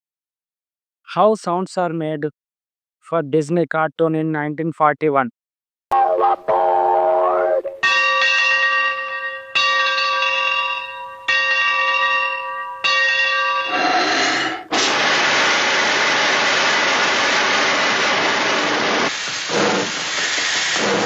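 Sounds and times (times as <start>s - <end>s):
bell strikes ringing: 7.8s - 13.7s
loud steady hiss: 14.6s - 21.0s.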